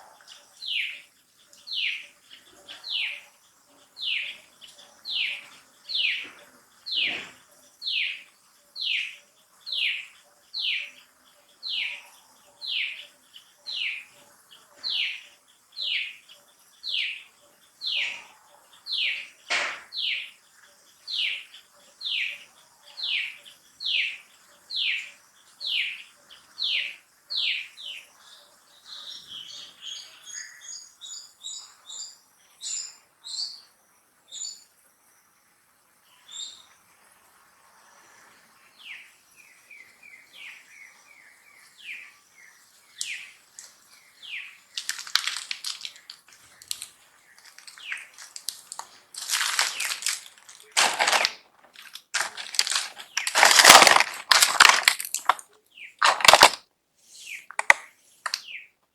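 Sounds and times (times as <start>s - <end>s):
loud crackling rustling: 44.8s - 56.6s.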